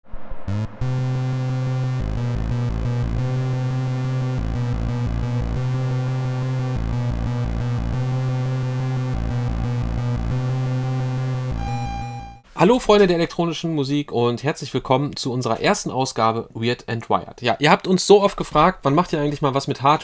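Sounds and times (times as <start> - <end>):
low synthesizer drone: 0.5 - 12.5
pulsing bass: 0.5 - 12.5.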